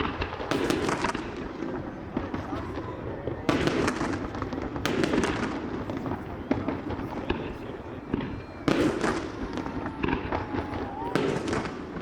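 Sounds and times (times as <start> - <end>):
fireworks bursts: 0.0 - 12.0
fireworks pops and crackles: 0.0 - 12.0.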